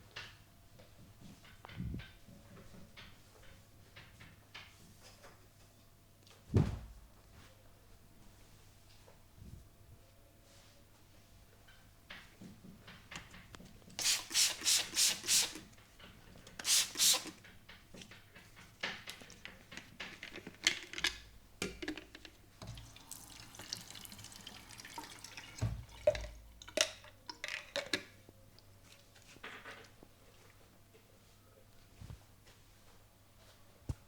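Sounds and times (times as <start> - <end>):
short hissing bursts: 14.0 - 15.6, 16.6 - 17.4.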